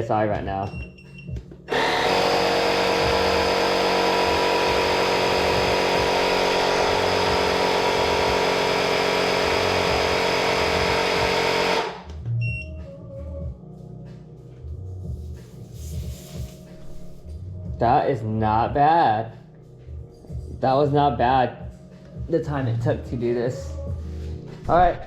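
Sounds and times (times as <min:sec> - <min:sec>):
electric air compressor running: 0:01.7 - 0:12.1.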